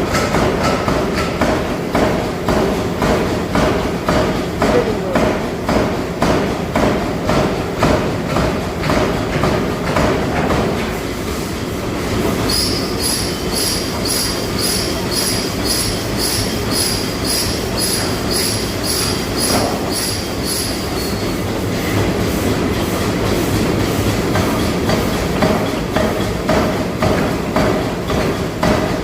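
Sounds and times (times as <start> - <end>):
high-pitched metallic squeal: 12.5 - 21.4.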